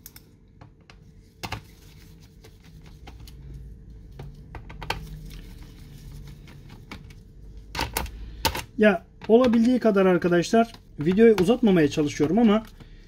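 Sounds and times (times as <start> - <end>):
tool tapping plastic case: 7.8 - 9.8.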